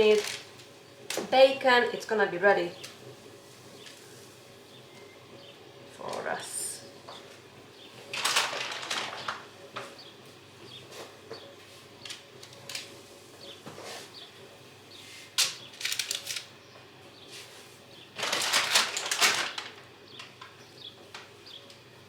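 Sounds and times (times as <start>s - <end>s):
rustling: 0.0s - 1.3s, 8.0s - 9.5s, 14.9s - 16.5s, 17.3s - 19.8s.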